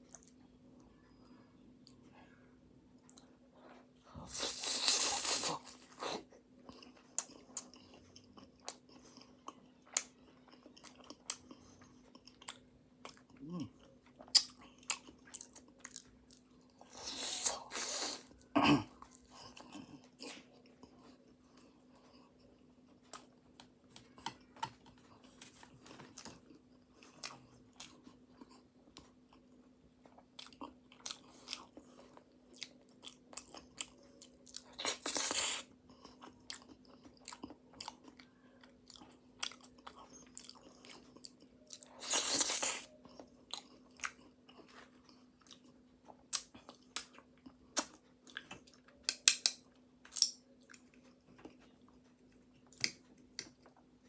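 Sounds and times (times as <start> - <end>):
chewing and crunching pastry: 0.0 - 54.0
faint steady hum: 0.0 - 54.0.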